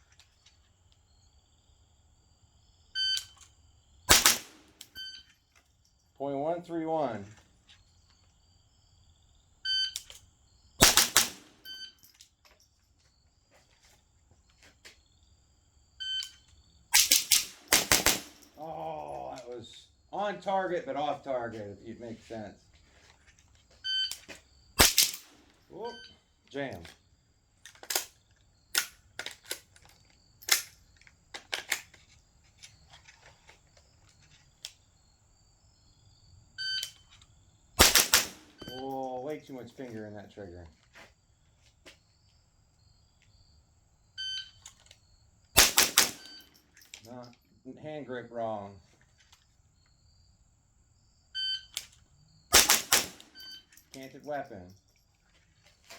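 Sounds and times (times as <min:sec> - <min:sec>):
rifle shots: 0:04.1 - 0:04.9, 0:10.8 - 0:11.7, 0:17.0 - 0:18.6, 0:24.8 - 0:25.5, 0:37.8 - 0:38.9, 0:45.6 - 0:46.5, 0:52.5 - 0:53.4
rifle action metallic clacks: 0:04.1 - 0:05.0, 0:10.0 - 0:12.6, 0:17.0 - 0:18.6, 0:24.1 - 0:25.6, 0:27.7 - 0:32.0, 0:36.8 - 0:39.0, 0:45.6 - 0:47.1, 0:51.7 - 0:54.2.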